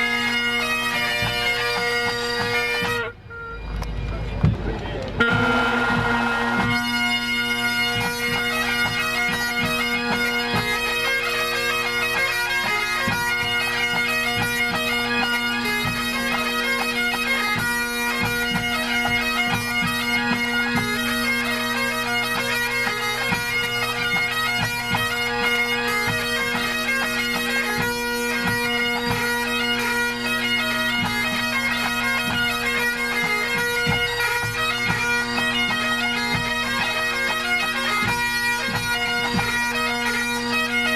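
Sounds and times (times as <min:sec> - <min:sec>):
bagpipes playing a tune: 0:00.0 - 0:40.9
drum strokes: 0:02.4 - 0:10.8.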